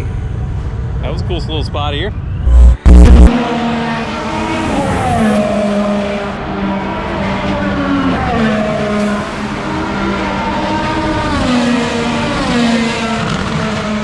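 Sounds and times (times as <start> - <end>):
race car engines: 2.5 - 14.0.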